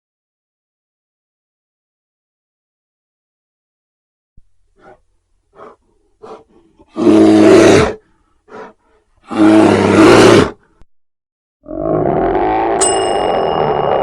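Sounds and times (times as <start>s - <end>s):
animal grunting: 4.8s - 10.7s
large animal roaring: 5.6s - 10.6s, 11.6s - 14.0s.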